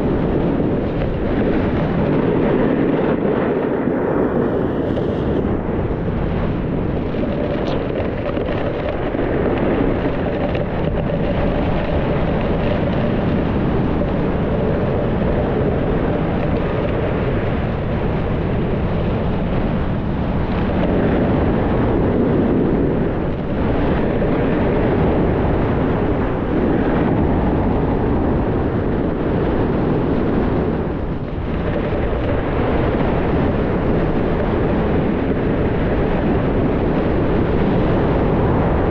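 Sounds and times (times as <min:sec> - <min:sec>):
skis sliding over snow: 0:00.0 - 0:17.4
wind on microphone: 0:00.0 - 0:38.9.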